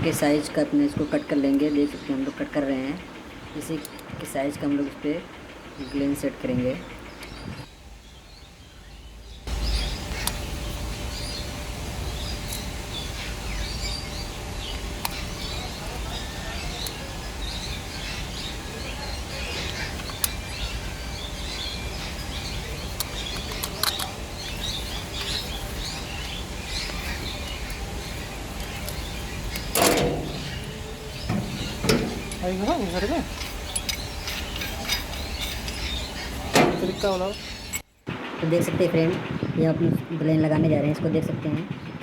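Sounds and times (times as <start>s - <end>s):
birds chirping: 0.0s - 42.0s
steady low rumble: 16.8s - 42.0s
sharp clicks: 23.0s - 24.1s.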